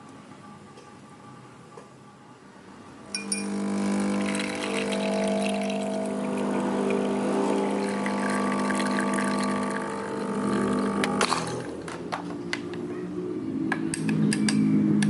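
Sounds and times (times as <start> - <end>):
appliance motor humming: 3.2 - 11.8.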